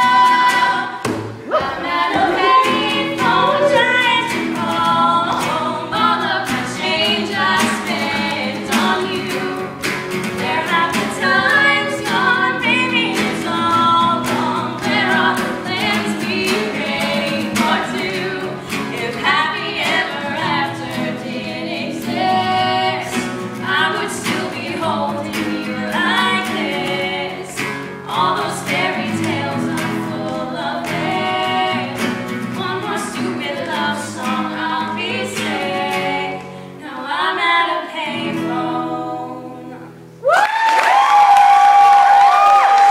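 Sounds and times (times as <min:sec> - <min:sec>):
voices singing in harmony: 0:00.0 - 0:40.1
audience cheering: 0:01.4 - 0:04.0, 0:40.2 - 0:42.9.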